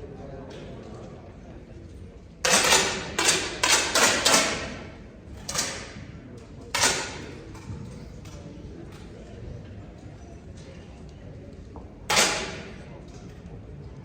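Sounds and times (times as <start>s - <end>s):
air rifle shots ringing: 12.1s - 12.8s.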